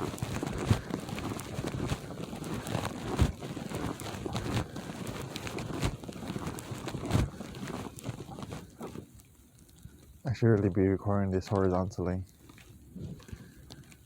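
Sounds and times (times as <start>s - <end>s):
footsteps crunching in snow: 0.0s - 9.0s
wind on microphone: 0.0s - 9.1s.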